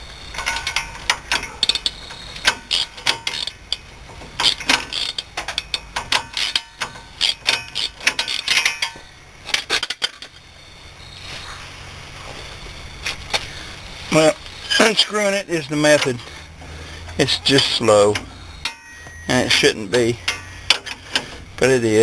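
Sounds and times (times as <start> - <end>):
ratchet wrench clicking: 1.4 - 3.8, 4.4 - 8.9.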